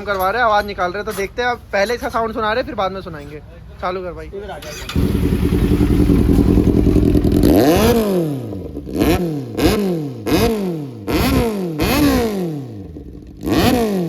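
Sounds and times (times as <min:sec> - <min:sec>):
motorcycle engine idling: 0:04.7 - 0:09.7, 0:12.8 - 0:13.6
motorcycle throttle blips: 0:04.7 - 0:14.0.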